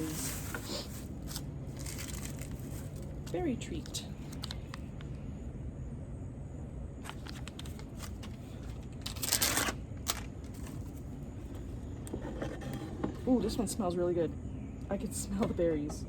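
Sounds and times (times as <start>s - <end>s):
loud plastic rustle: 0.0s - 3.4s, 7.1s - 11.1s
plastic wrapper crinkling: 0.0s - 4.9s, 7.1s - 11.1s.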